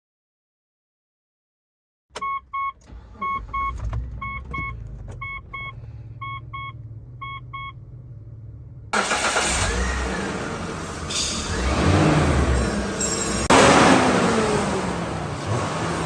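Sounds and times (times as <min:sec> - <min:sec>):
car engine rumble: 0:02.1 - 0:16.0
dashboard warning chime double-beeping: 0:02.2 - 0:07.8.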